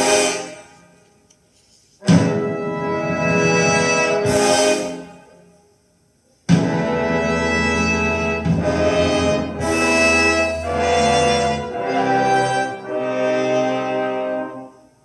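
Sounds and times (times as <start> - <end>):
brass instruments: 0.0 - 1.1, 2.0 - 5.5, 6.5 - 15.0
music over loudspeakers: 6.5 - 13.2.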